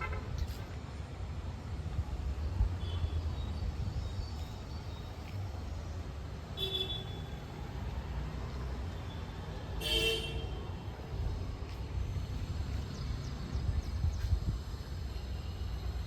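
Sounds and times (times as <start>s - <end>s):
road traffic rumble: 0.0s - 16.0s
vehicle horn honk: 9.8s - 10.6s.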